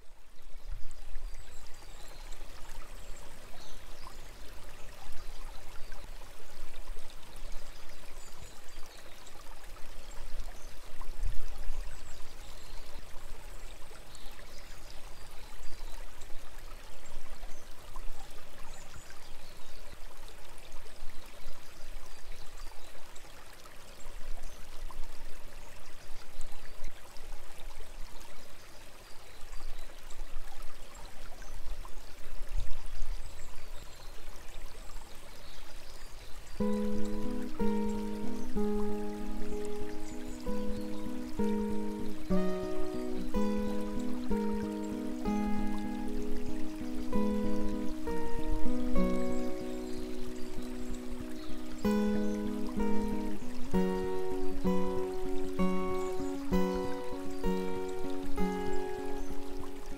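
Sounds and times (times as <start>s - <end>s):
birds chirping faintly: 0.0s - 20.5s, 32.8s - 59.9s
stream babbling: 0.0s - 59.9s.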